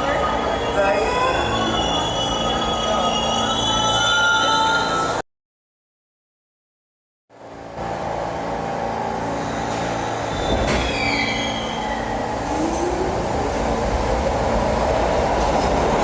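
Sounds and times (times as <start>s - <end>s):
subway train rumble: 0.0s - 5.2s, 7.3s - 16.0s
falling squeals: 0.4s - 5.2s, 9.4s - 13.2s.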